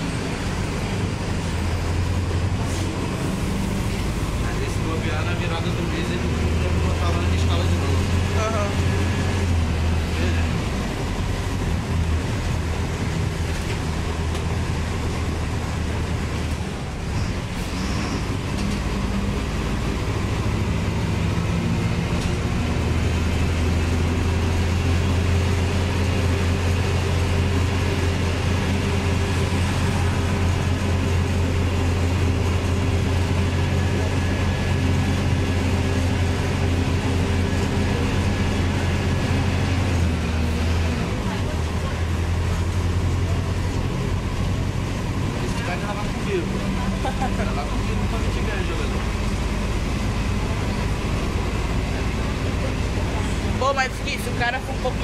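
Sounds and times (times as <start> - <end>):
bus diesel engine droning: 0.0 - 55.0
road noise: 0.0 - 55.0.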